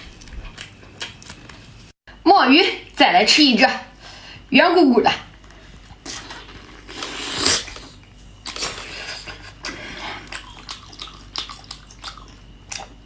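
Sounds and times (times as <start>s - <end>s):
wet chewing and bites: 0.0s - 1.7s, 9.6s - 13.0s.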